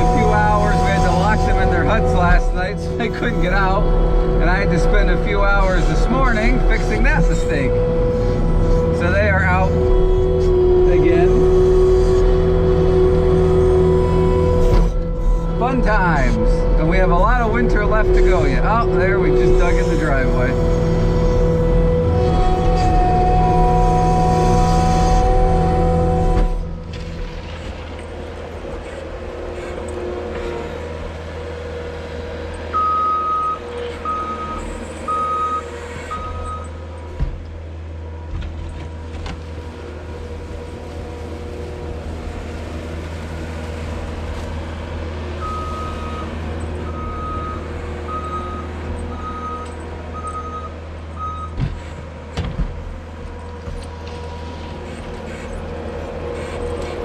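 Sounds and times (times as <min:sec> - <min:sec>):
diesel engine running: 0:00.0 - 0:57.0
backup alarm beeping: 0:32.7 - 0:36.8, 0:45.4 - 0:51.6.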